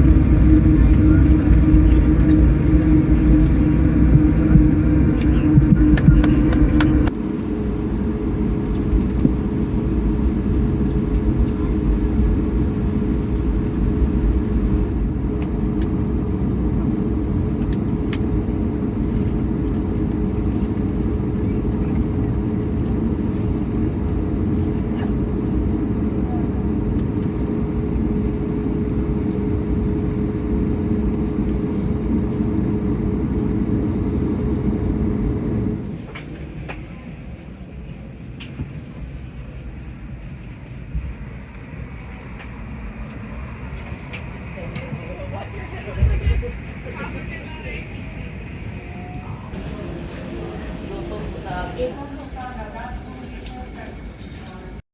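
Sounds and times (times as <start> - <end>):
constant drone: 0.0 - 54.8
airliner cabin engine rumble: 0.0 - 54.9.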